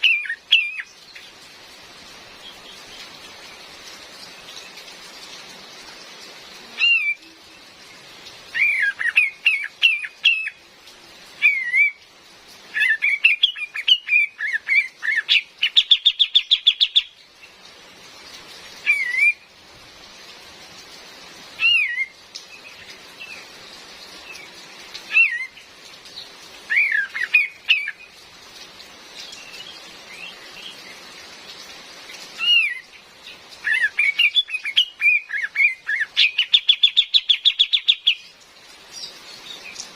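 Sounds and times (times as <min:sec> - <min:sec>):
rain hiss: 0:00.0 - 0:39.9
bird whistling calls: 0:11.4 - 0:12.0, 0:26.7 - 0:28.0.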